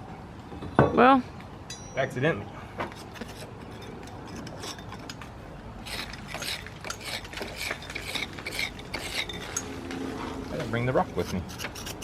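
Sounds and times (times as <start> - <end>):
metallic clicks and scrapes: 2.9 - 12.0.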